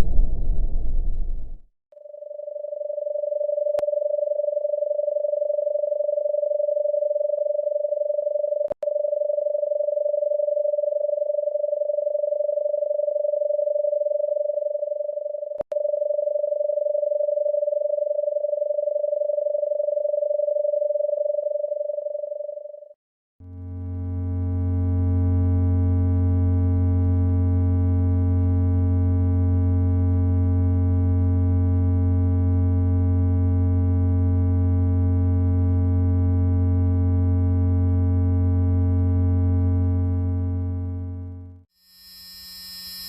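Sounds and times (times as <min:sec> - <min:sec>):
fluttering electronic tone: 0:00.0 - 0:01.6, 0:41.8 - 0:43.0.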